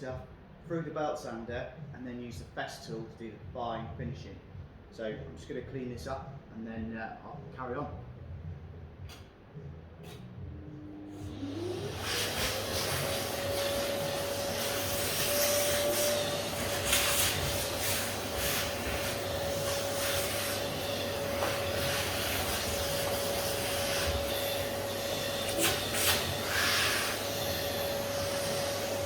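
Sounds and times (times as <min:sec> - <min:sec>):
vacuum cleaner running: 0:10.6 - 0:29.0.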